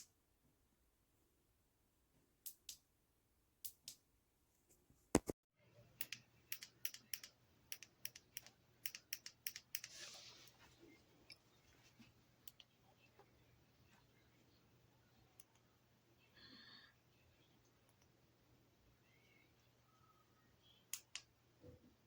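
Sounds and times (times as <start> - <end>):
light irregular clicks: 6.0 - 9.9, 20.9 - 21.3
faint low hum: 10.4 - 22.0.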